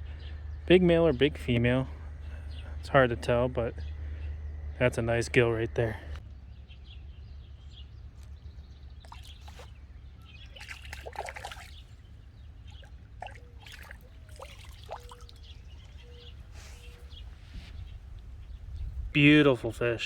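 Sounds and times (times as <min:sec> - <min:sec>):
water splashing and trickling: 0:08.9 - 0:16.4
small splashes: 0:09.0 - 0:16.0.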